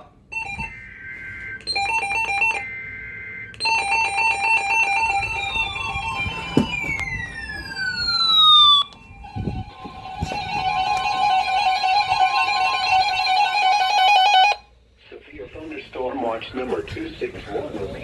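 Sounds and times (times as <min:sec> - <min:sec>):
falling electronic sweeps: 0:05.4 - 0:09.8.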